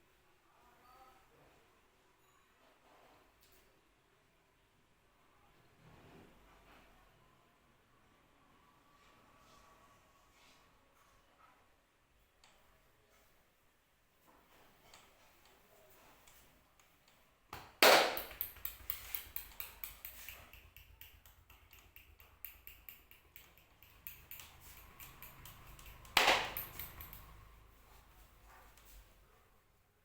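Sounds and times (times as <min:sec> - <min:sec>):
hand strikes massage: 0:17.6 - 0:27.4.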